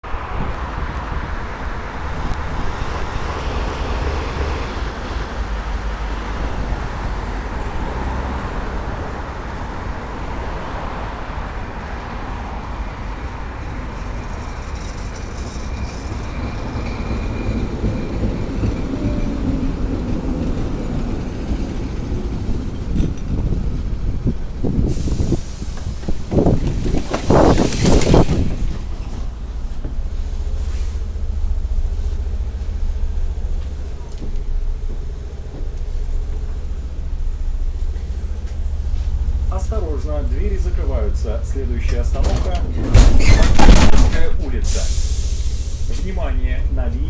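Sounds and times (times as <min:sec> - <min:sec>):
tram wheels rattling over rails: 0:11.7 - 0:46.9.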